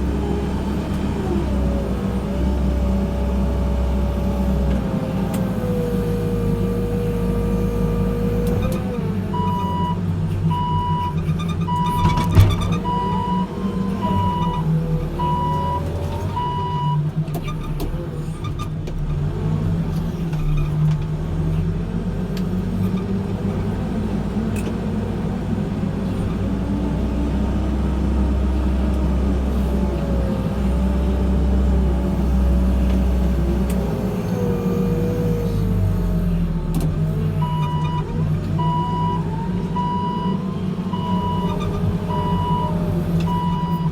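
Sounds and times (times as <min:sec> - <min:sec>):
diesel engine rumbling: 0:00.0 - 0:43.9
reversing alarm beeping: 0:09.4 - 0:17.0, 0:38.6 - 0:43.9.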